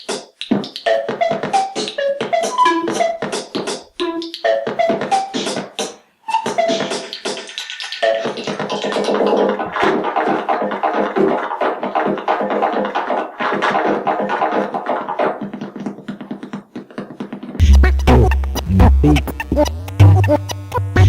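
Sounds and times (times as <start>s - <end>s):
short pitched notes over a beat: 17.6s - 21.0s.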